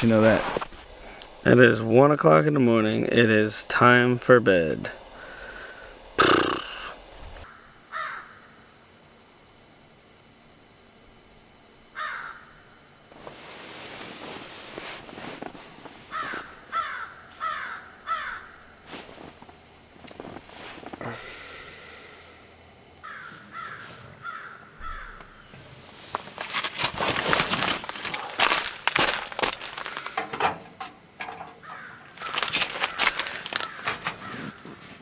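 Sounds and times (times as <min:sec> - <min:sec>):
loud rustling and crunching: 0:00.0 - 0:01.5, 0:25.7 - 0:35.0
crows cawing: 0:05.1 - 0:08.6, 0:12.0 - 0:12.6, 0:16.1 - 0:18.8, 0:23.0 - 0:25.5, 0:31.6 - 0:34.8.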